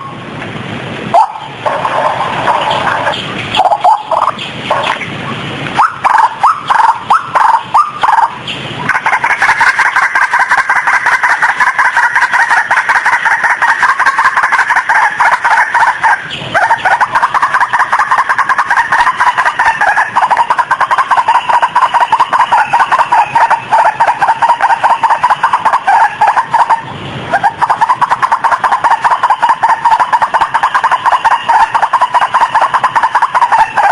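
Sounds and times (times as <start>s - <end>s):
waterhen calling: 0.0s - 0.3s, 1.1s - 33.9s.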